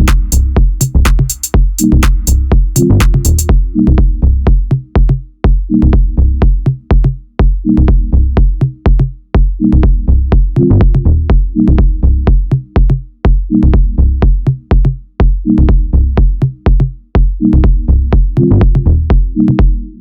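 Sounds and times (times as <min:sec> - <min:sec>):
electronic dance music: 0:00.0 - 0:03.8.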